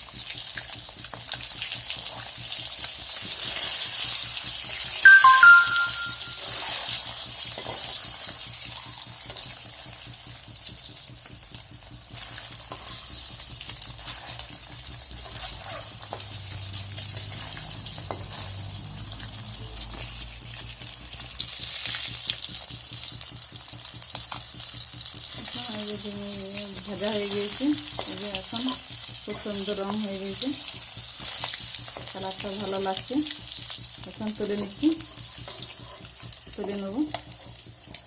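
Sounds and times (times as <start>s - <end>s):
eggs sizzling in hot oil: 0.0s - 38.0s.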